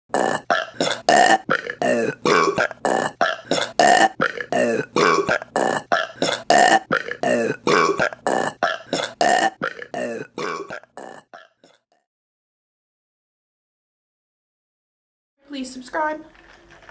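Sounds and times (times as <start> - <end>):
woman burping: 0.1 - 11.8.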